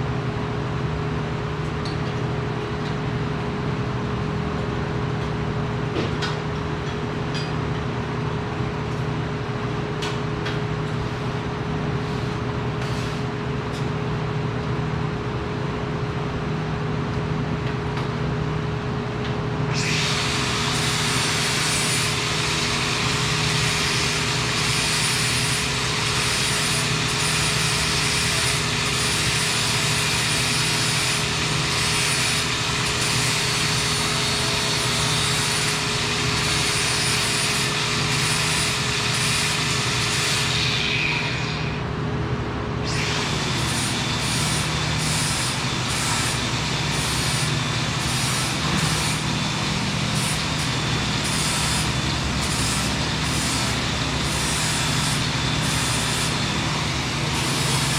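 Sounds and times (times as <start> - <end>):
machinery hum: 14.4 - 57.9.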